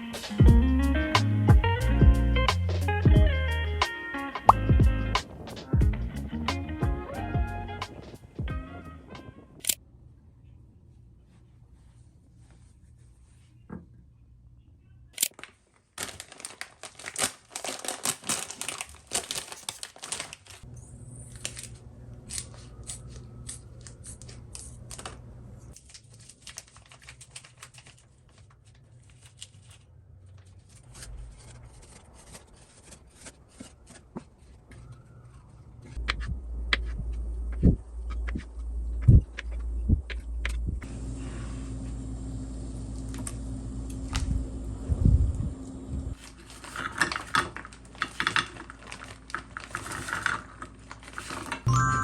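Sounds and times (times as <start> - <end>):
crinkling and tearing: 15.2 - 40.6, 46.1 - 51.7
low rumble: 36.0 - 40.9.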